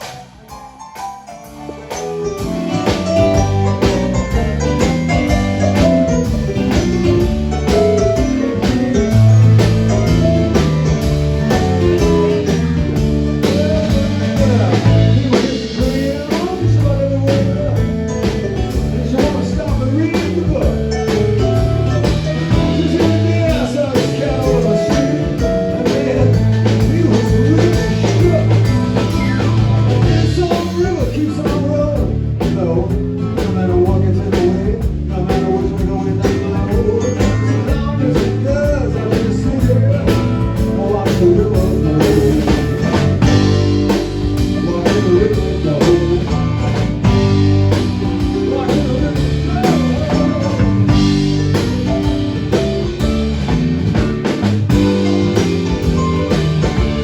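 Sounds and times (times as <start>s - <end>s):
blues-rock band playing: 0.0s - 57.0s
person singing: 11.5s - 51.6s.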